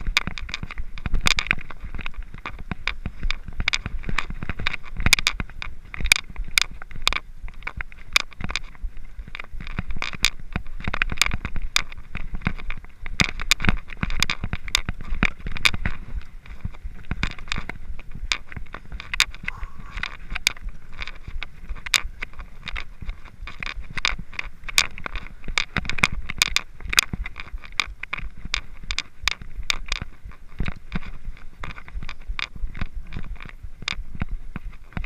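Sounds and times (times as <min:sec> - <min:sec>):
bike rattling over rough ground: 0:00.0 - 0:35.0
steady low rumble: 0:19.4 - 0:21.0.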